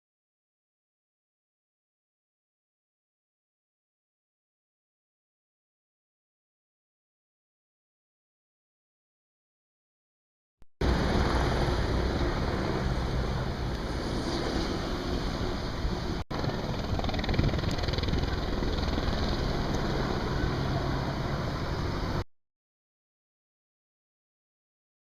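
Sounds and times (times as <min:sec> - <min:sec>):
helicopter flying overhead: 0:10.8 - 0:22.2.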